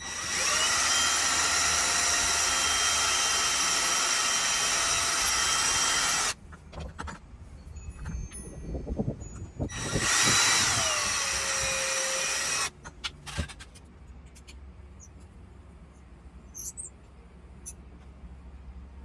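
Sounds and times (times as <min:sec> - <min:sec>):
small power tool running: 0:00.0 - 0:06.4, 0:09.7 - 0:12.7.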